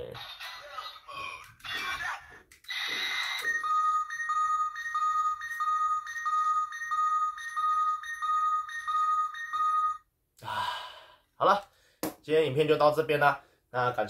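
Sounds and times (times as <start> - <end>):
alternating high and low beeps: 3.4 - 10.0.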